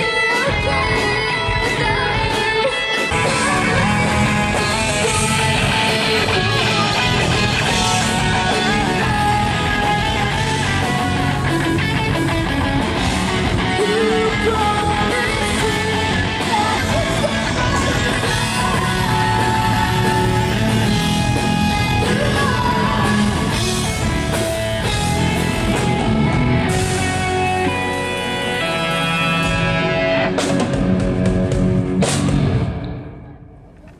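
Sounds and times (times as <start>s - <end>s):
person singing: 0.0s - 24.1s
rock band playing: 0.0s - 33.4s.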